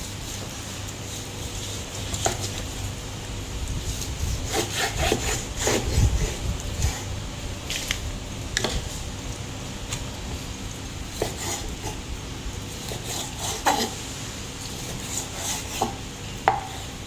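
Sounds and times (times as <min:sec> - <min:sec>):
knife sawing meat: 0:00.0 - 0:03.0, 0:03.9 - 0:07.2, 0:11.0 - 0:17.0.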